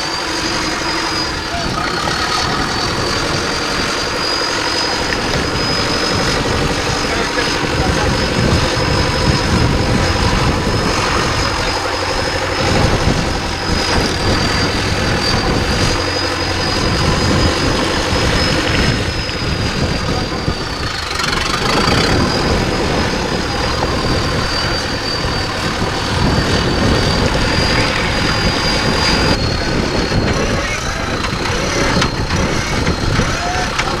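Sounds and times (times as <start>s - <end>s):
engine running at low revs: 0.0s - 34.0s
high-pitched whine: 0.0s - 34.0s.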